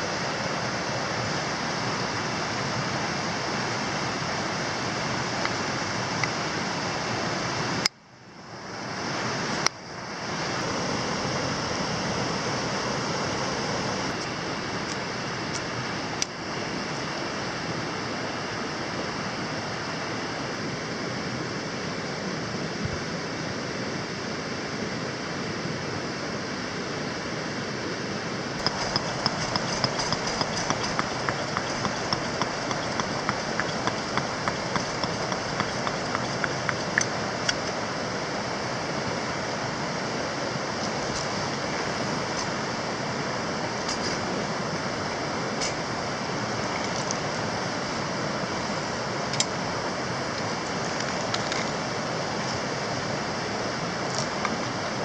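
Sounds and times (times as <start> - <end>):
flowing water rushing: 28.5 - 55.0.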